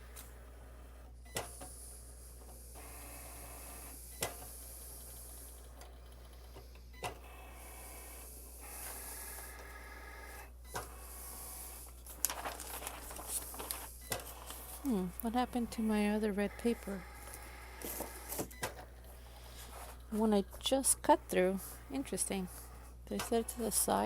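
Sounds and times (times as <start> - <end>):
cutting machine motors whirring: 2.8 - 11.9, 13.5 - 24.0.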